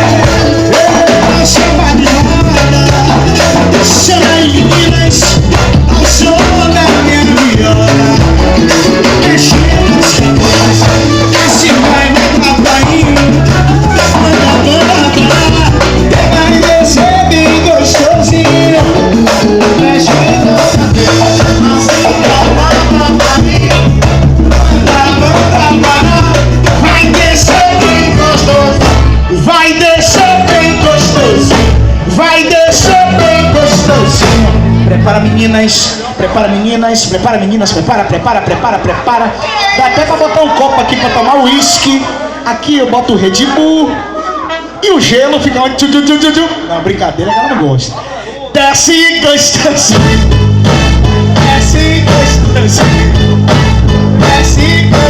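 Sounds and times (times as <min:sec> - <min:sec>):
melodic lines: 0:00.0 - 0:35.5
samba band playing: 0:00.0 - 0:43.6, 0:48.8 - 0:55.0
percussion rhythm: 0:00.0 - 0:43.9, 0:48.6 - 0:55.0
bass: 0:00.0 - 0:55.0.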